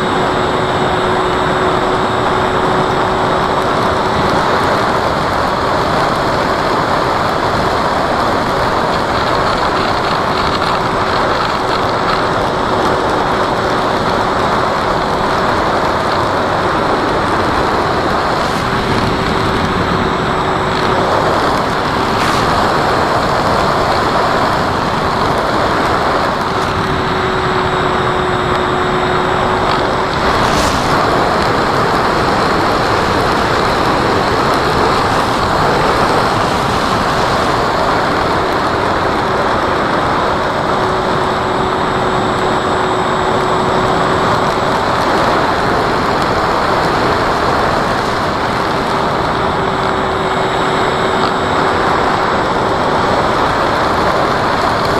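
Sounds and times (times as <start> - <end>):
model airplane motor humming: 0.0 - 54.9
rushing wind: 0.0 - 54.9.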